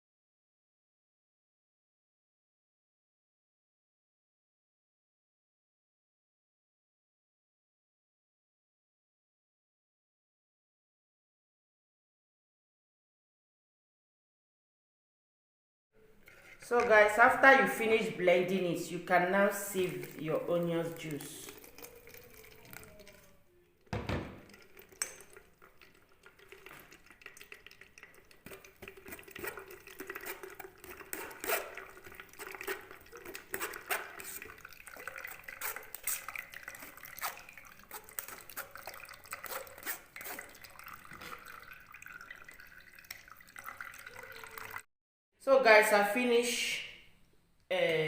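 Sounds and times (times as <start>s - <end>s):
liquid trickling and dripping: 16.0s - 44.9s
knock: 23.9s - 24.4s.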